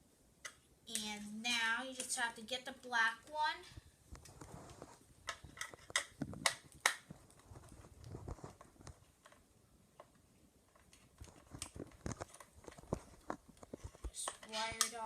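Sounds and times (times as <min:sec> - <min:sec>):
faint handling noise: 0:03.2 - 0:15.0.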